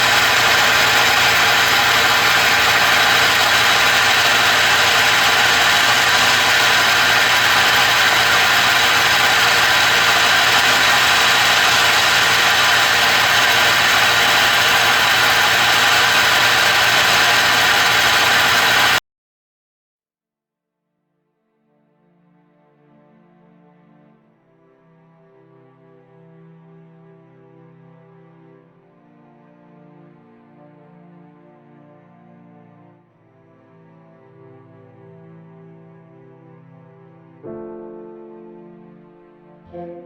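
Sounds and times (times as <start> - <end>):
washing machine grinding: 0.0 - 19.0.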